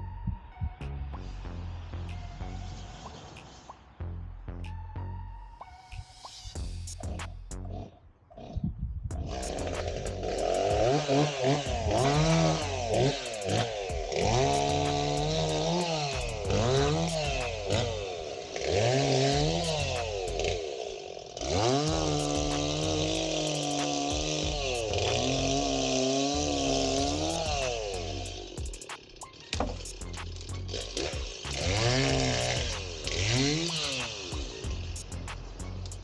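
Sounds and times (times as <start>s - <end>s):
chainsaw running: 9.2s - 28.6s, 30.4s - 35.1s.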